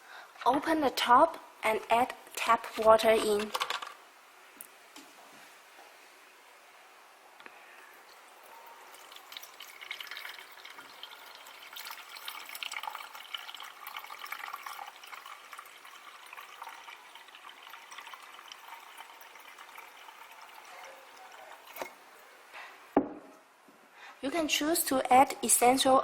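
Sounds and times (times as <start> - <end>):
water pouring into plastic tank: 8.8 - 22.0.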